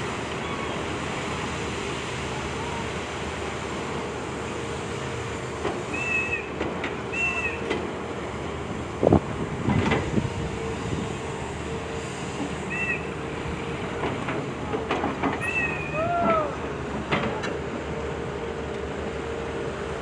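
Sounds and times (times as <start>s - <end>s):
excavator mechanical hum: 0.0s - 20.0s
short high squeaks: 5.9s - 7.7s, 12.7s - 13.2s, 15.4s - 16.4s.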